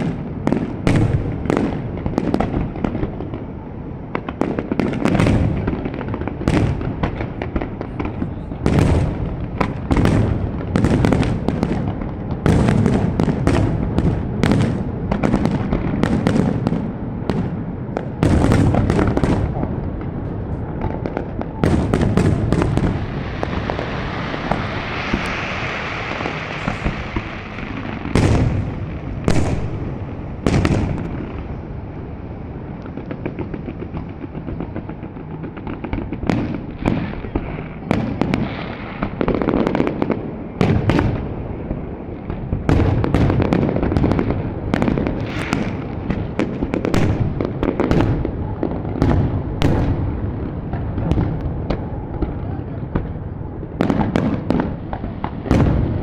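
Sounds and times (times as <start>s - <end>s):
fireworks crackle: 0.0s - 56.0s
firework shells bursting: 20.9s - 31.5s, 45.1s - 48.1s.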